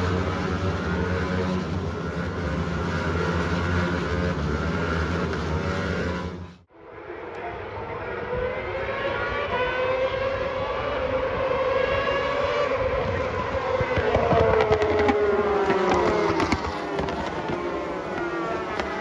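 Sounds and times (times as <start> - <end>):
engine crackles: 0.0 - 6.7, 12.5 - 19.0
racing motorbike engines revving: 0.0 - 6.7, 8.1 - 19.0.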